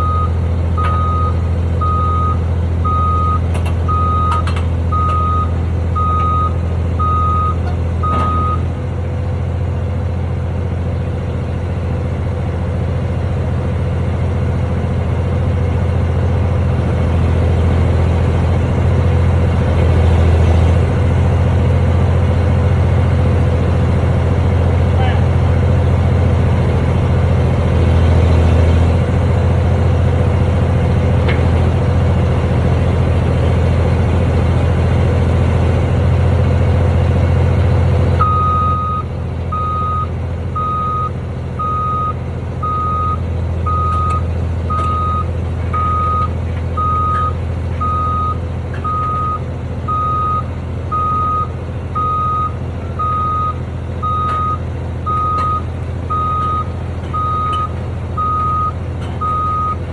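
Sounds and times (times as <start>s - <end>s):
reversing alarm beeping: 0.0s - 8.7s, 38.2s - 59.9s
diesel engine running: 0.0s - 59.9s.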